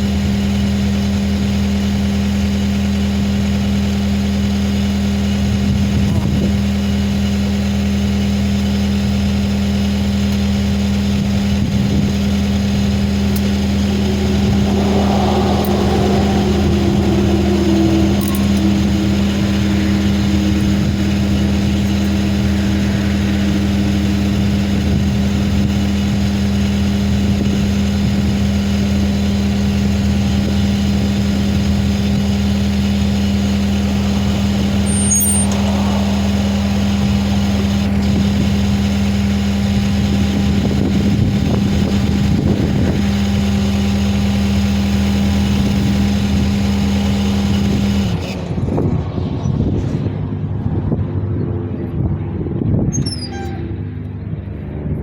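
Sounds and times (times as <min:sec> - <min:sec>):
skid steer engine idling: 0:00.0 - 0:48.4
falling whine: 0:11.4 - 0:44.6.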